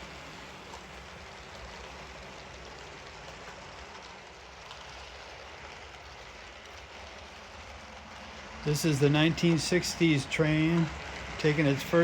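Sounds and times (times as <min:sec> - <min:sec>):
model train rolling on track: 0:00.0 - 0:12.0.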